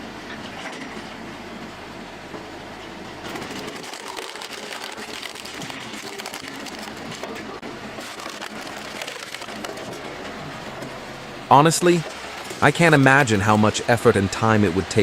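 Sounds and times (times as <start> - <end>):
wood-processing machine running: 3.1 - 15.0.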